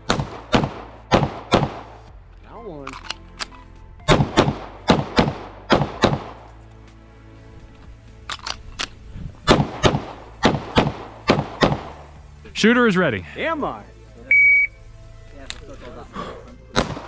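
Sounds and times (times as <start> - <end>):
pistol shots: 0.0 - 2.0, 4.1 - 6.4, 9.4 - 12.1, 16.7 - 17.0.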